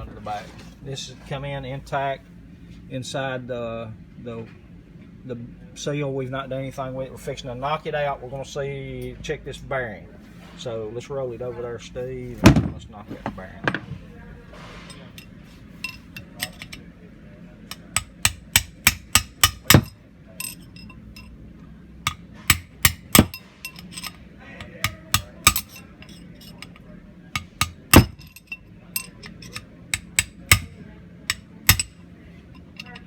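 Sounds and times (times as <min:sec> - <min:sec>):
hammer blows on metal: 0:17.7 - 0:21.3.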